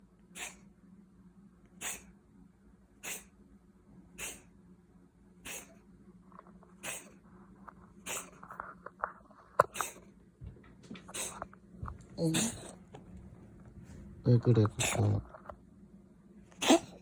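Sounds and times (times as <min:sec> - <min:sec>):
cat coughing: 0:00.3 - 0:00.6, 0:01.8 - 0:02.1, 0:03.0 - 0:03.3, 0:04.2 - 0:04.5, 0:05.4 - 0:05.8, 0:06.8 - 0:07.1, 0:12.2 - 0:12.9, 0:14.6 - 0:15.2, 0:16.6 - 0:17.0.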